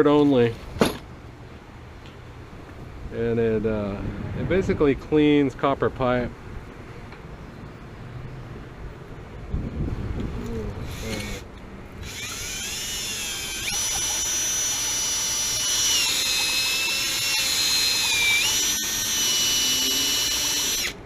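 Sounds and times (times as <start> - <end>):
drill whining: 10.8 - 21.0.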